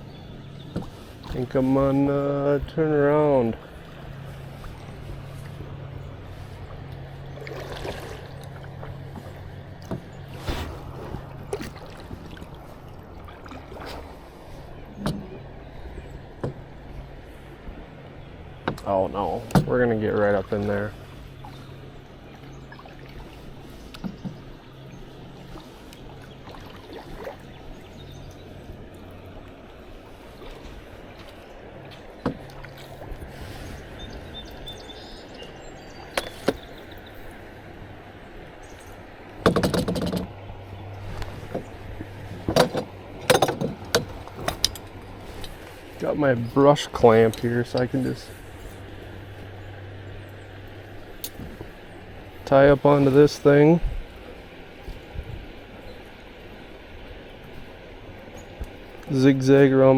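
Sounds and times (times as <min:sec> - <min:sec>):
steady low hum: 0:00.0 - 0:59.2
paddle strokes in water: 0:00.0 - 0:59.9
sharp knocks: 0:39.4 - 0:40.3.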